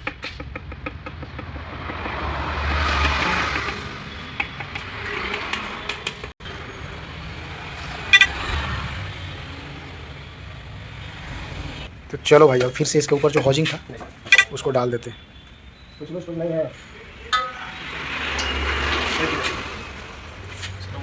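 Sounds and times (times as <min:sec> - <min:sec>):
sharp ringing metal clink: 0:17.3 - 0:17.6.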